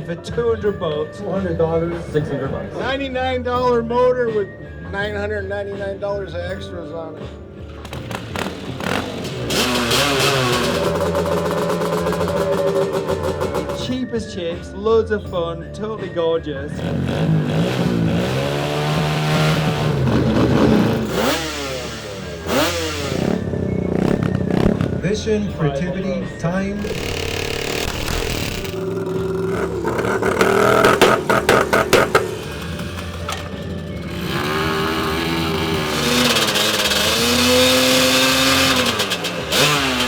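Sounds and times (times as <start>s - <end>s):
motorcycle engine revving: 7.7s - 14.1s, 16.7s - 40.0s.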